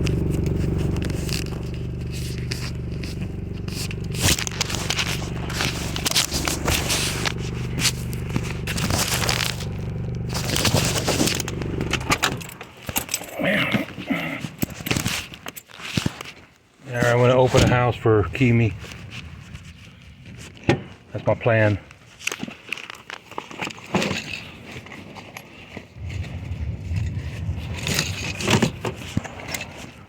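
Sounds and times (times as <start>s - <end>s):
scraping and crackling: 0.0s - 30.0s
steady low hum: 26.0s - 29.5s.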